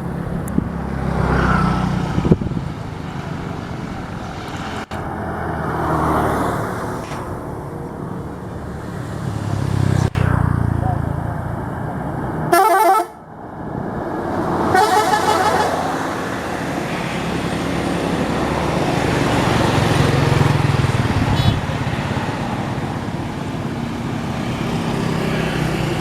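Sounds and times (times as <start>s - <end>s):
traffic and engine noise: 0.0s - 26.0s
bus air horn blasts: 12.5s - 13.2s, 14.7s - 16.2s, 21.3s - 21.7s.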